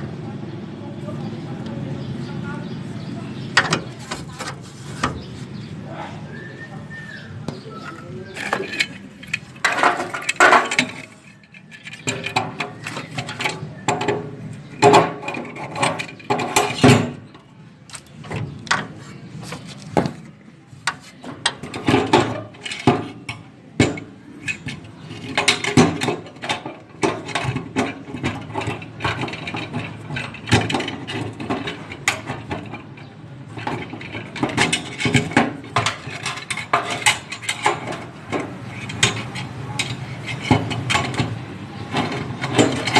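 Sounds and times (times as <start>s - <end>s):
hand tools clinking on metal: 7.8s - 14.2s, 21.5s - 42.9s.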